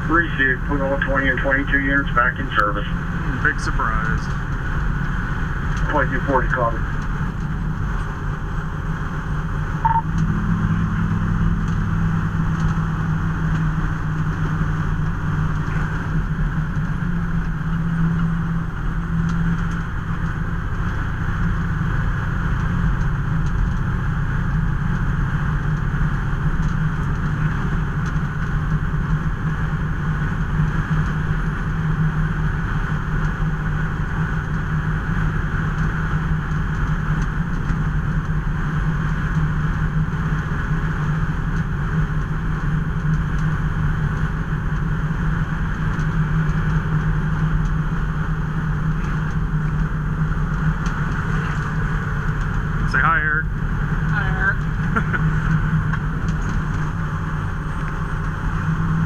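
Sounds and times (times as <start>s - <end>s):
fire engine droning: 0.0s - 59.0s
road noise: 0.0s - 59.0s.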